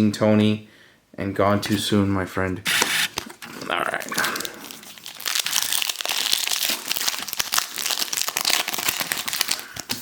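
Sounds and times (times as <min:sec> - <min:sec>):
foil wrapper crinkling: 0:03.2 - 0:10.0.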